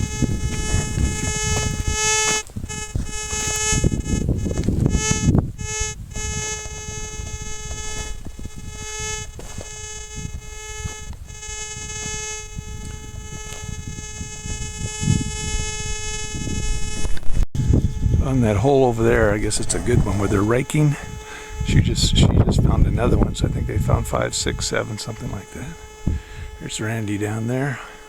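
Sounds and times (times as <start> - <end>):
low rumbling noise: 0.0 - 28.0
metal detector buzzing tone: 0.0 - 28.0.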